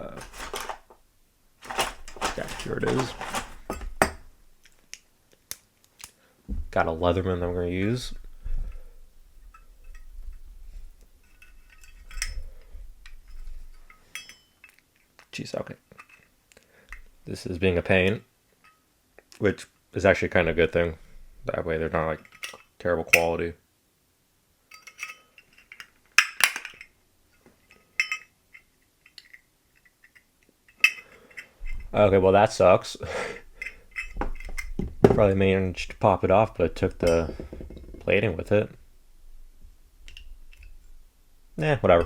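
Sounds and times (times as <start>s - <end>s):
pliers clinking on metal case: 0.0s - 1.0s, 1.6s - 4.3s, 13.8s - 14.8s, 24.7s - 26.9s, 27.7s - 31.8s, 33.6s - 35.2s.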